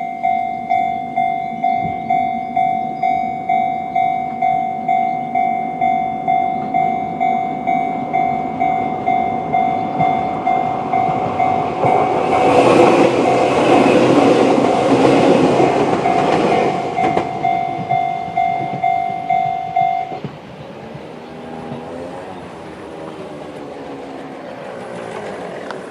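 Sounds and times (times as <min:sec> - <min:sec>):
level crossing alarm ringing: 0:00.0 - 0:20.5
train wheels rumbling and clacking: 0:00.0 - 0:25.9.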